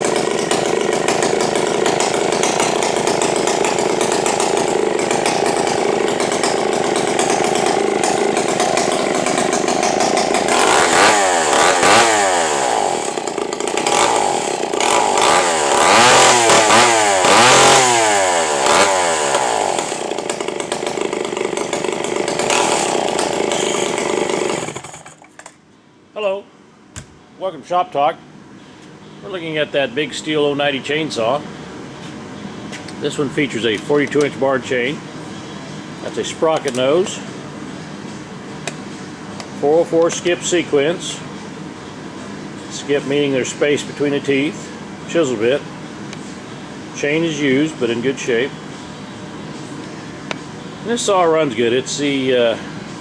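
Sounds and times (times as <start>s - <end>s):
chainsaw running and revving: 0.0s - 25.4s.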